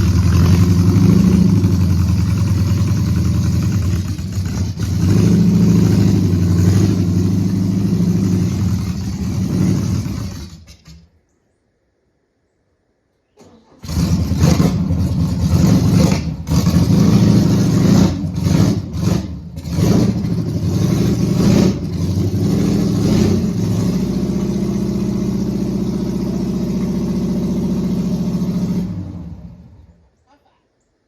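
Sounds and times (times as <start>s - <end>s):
car engine starting and revving: 0.0s - 11.0s, 13.4s - 30.0s.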